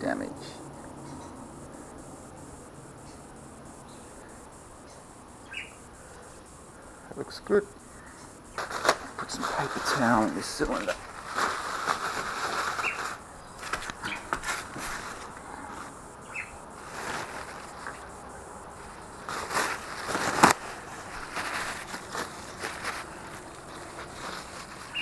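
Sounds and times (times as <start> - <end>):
bird chirps: 0.4 - 2.0, 3.0 - 7.1, 12.4 - 14.4, 15.0 - 16.8, 23.5 - 25.0
paper towel rustling: 8.6 - 25.0.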